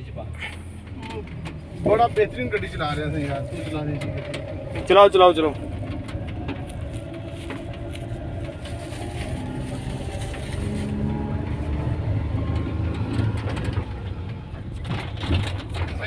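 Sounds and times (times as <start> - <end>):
car engine low rumble: 0.0 - 16.0.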